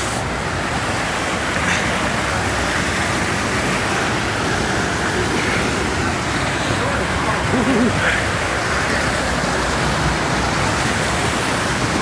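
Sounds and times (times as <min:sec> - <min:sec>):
creek water flowing: 0:00.0 - 0:12.0.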